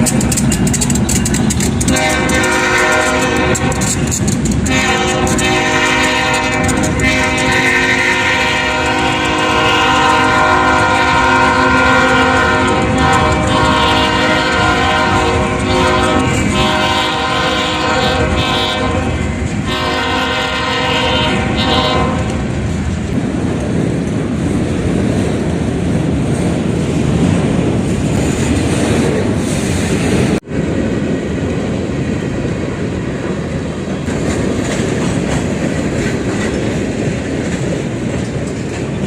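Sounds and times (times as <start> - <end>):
passing train rumble: 0.0 - 39.0
train horn blowing: 1.8 - 22.6.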